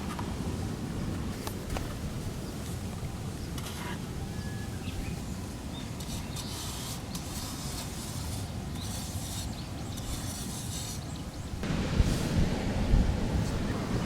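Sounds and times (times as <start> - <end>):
wind rumble on microphone: 9.9 - 14.0.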